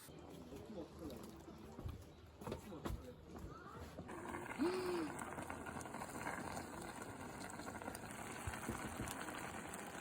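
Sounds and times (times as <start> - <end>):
liquid boiling in pot: 4.0 - 10.0.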